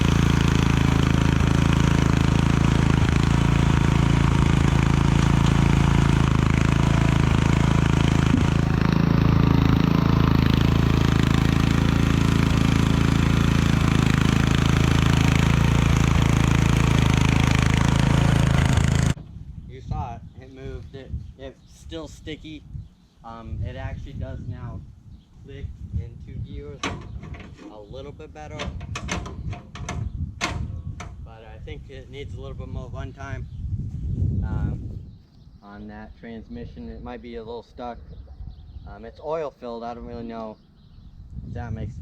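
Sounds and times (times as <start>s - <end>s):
riding lawn mower engine running: 0.0s - 19.3s, 26.8s - 31.2s.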